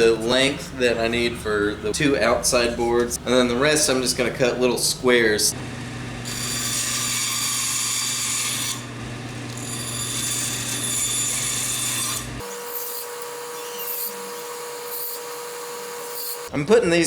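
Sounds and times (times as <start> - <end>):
steady motor hum: 0.6 - 13.6
power saw cutting wood: 5.4 - 16.5.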